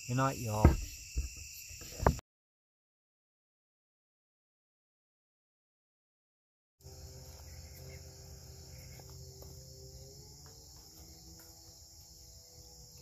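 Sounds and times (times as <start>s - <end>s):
crickets chirping: 0.0s - 2.2s, 6.8s - 13.0s.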